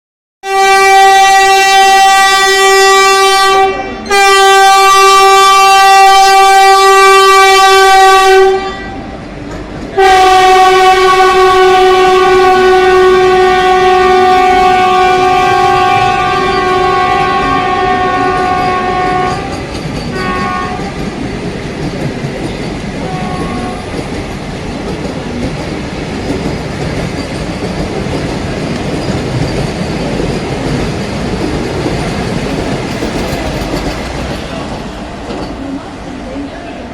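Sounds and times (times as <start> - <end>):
train horn blasts: 0.4 - 9.2, 10.0 - 21.0, 23.0 - 23.9
train clickety-clack on rails: 0.5 - 36.9.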